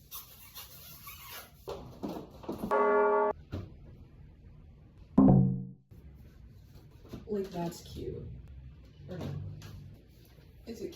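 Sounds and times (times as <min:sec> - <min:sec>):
steady pitched tone: 0:02.7 - 0:03.4, 0:05.2 - 0:05.8.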